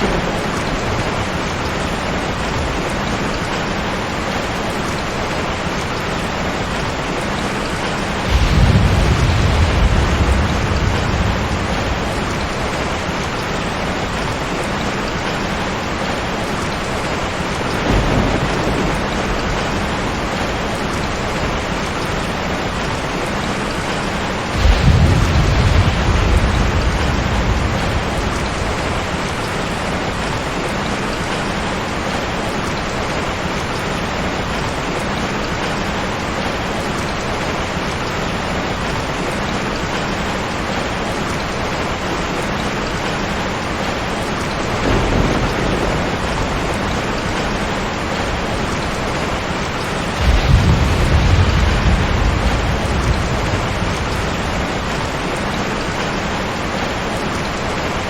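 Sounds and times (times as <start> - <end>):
thunder rolling: 0.0 - 4.3, 6.5 - 31.0, 42.6 - 57.2
steady rain hiss: 0.0 - 58.0.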